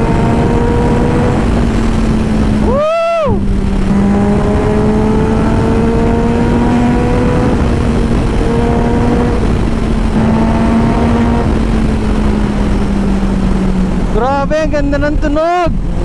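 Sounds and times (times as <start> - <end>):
heavy wind rush: 0.0 - 16.0
motorcycle engine running hard: 0.0 - 16.0.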